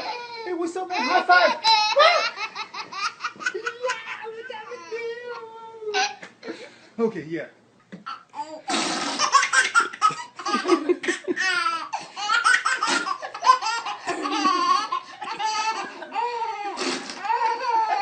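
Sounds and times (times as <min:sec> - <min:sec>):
baby laughing: 0:00.0 - 0:04.4, 0:08.0 - 0:18.0.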